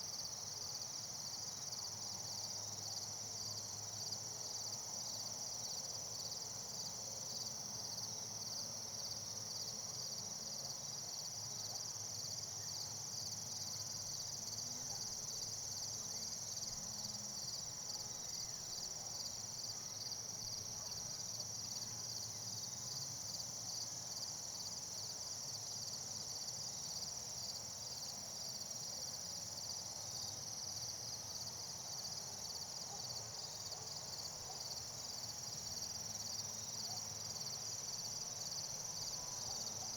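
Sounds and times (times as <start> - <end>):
insects chirping: 31.4 - 39.9.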